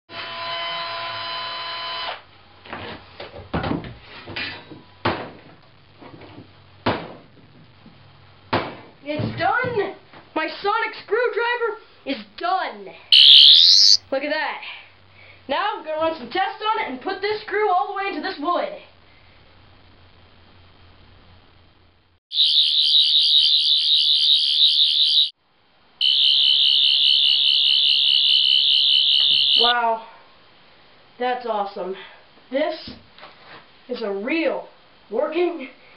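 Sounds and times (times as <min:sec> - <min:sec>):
high electronic warbling whine: 0:13.2 - 0:14.0.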